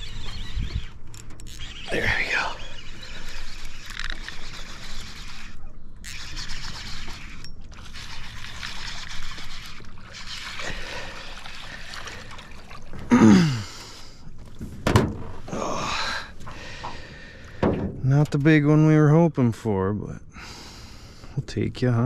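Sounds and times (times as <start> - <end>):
water splashing and trickling: 3.1 - 14.7
short falling vocal sound: 13.1 - 13.6.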